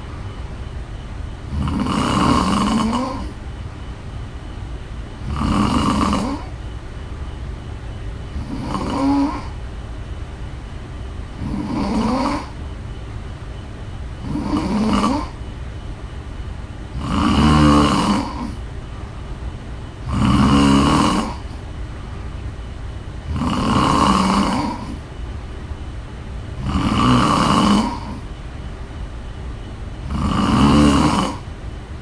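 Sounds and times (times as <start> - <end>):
low background hum: 0.0 - 32.0
woman snoring: 1.5 - 3.4, 5.2 - 6.6, 8.3 - 9.6, 11.3 - 12.6, 14.2 - 15.4, 16.9 - 18.6, 20.0 - 21.6, 23.3 - 25.0, 26.6 - 28.2, 30.0 - 31.5.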